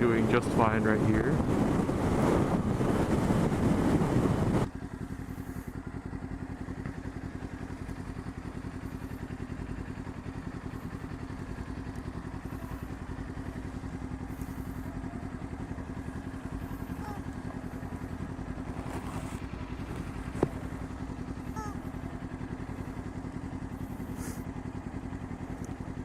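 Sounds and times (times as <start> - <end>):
wind rushing over microphone: 0.0 - 4.7
motorcycle engine idling: 0.0 - 26.0.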